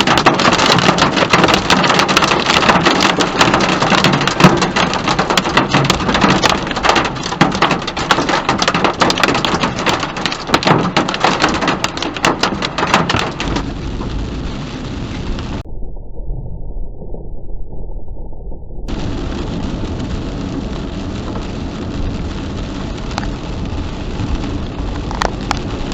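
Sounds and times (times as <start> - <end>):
heavy rain on hard surface: 0.0 - 15.6, 18.9 - 25.9
steady low rumble: 11.8 - 25.9.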